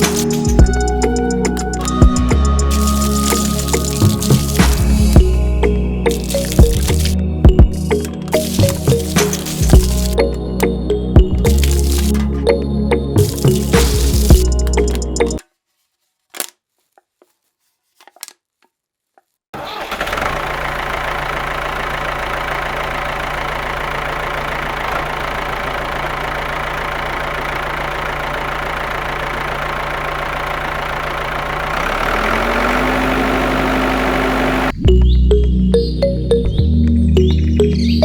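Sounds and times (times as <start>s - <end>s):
small motor running with rattle: 0.0s - 5.4s, 6.1s - 7.2s, 7.9s - 10.2s, 11.5s - 12.4s, 13.2s - 15.4s.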